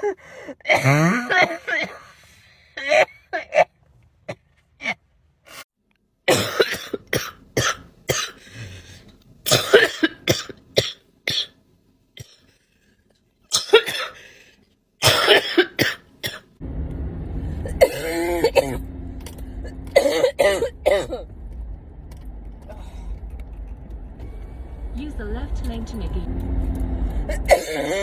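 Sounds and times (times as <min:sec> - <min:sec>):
harsh coughing: 0:00.0 - 0:02.2, 0:02.8 - 0:03.7, 0:06.3 - 0:11.6, 0:13.5 - 0:14.2, 0:15.0 - 0:16.5, 0:17.7 - 0:18.8, 0:19.9 - 0:21.2, 0:27.3 - 0:28.0.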